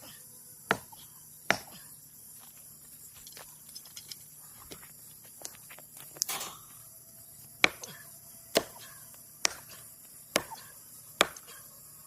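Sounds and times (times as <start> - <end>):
axe chopping tree trunk: 0.7 - 1.8, 7.6 - 11.6.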